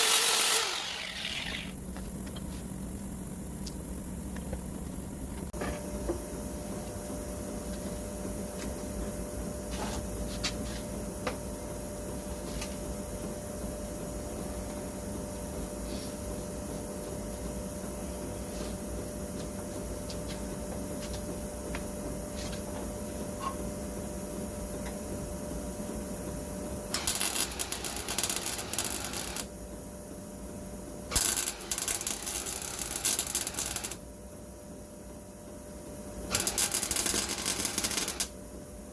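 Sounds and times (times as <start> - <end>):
welding arc crackle: 0.0 - 1.8, 26.9 - 29.5, 31.1 - 34.0, 36.3 - 38.3
electrical hum: 0.0 - 10.3.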